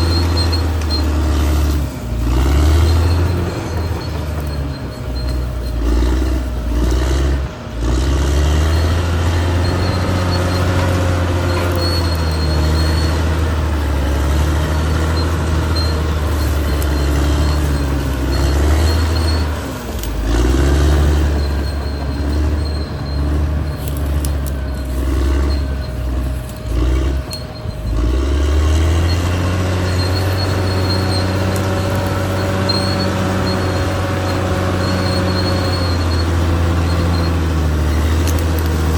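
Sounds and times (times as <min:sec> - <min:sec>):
bulldozer diesel engine under load: 0:00.0 - 0:38.9.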